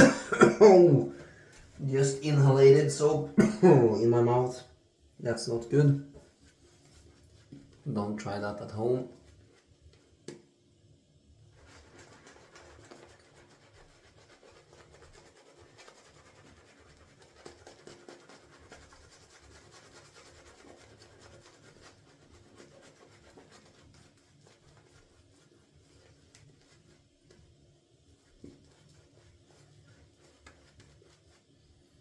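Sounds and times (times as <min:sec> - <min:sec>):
shaving brush scratching stubble: 0:11.6 - 0:27.0.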